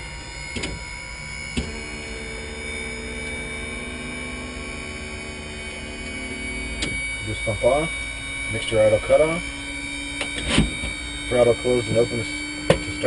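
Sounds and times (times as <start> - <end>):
electric fuel pump humming: 0.0 - 13.0.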